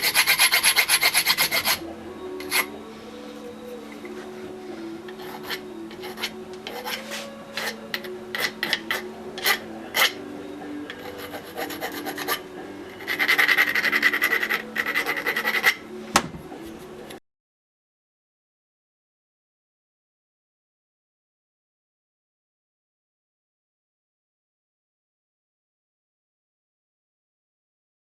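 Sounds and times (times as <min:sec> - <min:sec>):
hand file rasping on metal: 0:00.0 - 0:01.8, 0:02.4 - 0:02.7, 0:05.0 - 0:10.2, 0:10.9 - 0:15.8.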